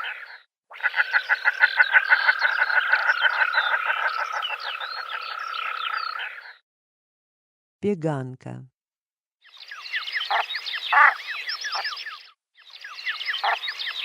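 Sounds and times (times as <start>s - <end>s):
shelducks calling: 0.0s - 6.6s, 9.6s - 14.0s.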